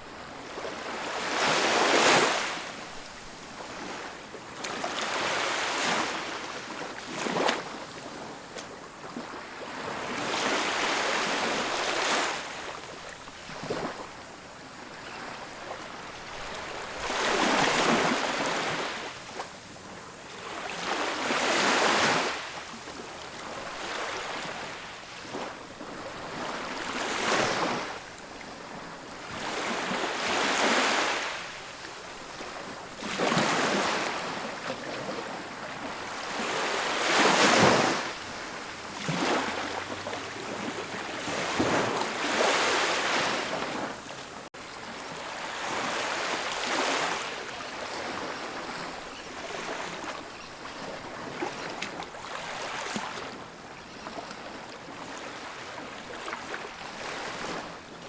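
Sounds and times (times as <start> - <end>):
ocean waves breaking on beach: 0.0 - 58.0.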